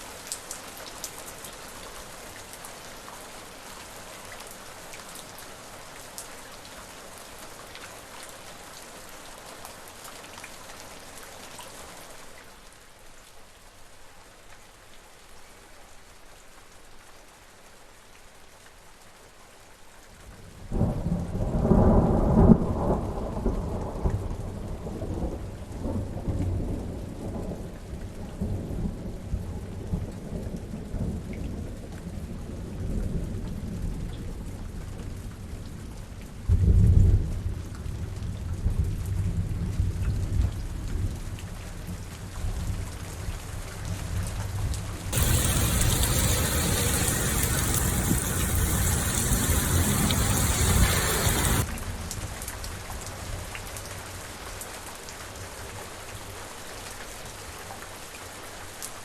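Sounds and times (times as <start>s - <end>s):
rain hissing: 45.1s - 51.7s
thunder rumbling: 45.2s - 51.7s.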